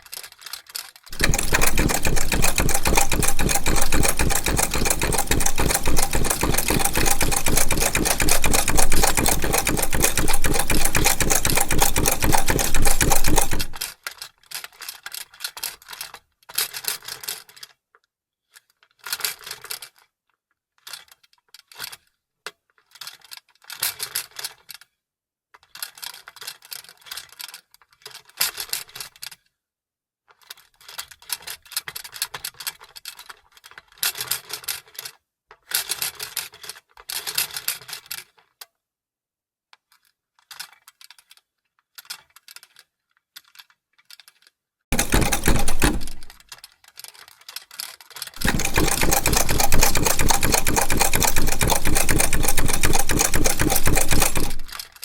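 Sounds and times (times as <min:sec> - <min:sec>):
sewing machine stitching: 0:01.1 - 0:13.8, 0:44.9 - 0:46.4, 0:48.4 - 0:55.0.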